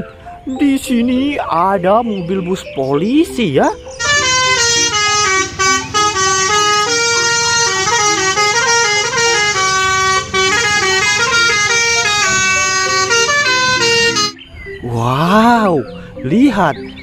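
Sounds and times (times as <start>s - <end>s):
multi-tone bus horn playing a tune: 4.0s - 14.4s.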